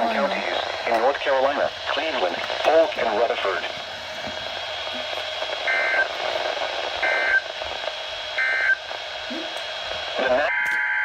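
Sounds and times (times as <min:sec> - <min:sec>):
radio hiss: 0:00.0 - 0:10.6
buzzy two-tone data bursts: 0:07.0 - 0:07.5.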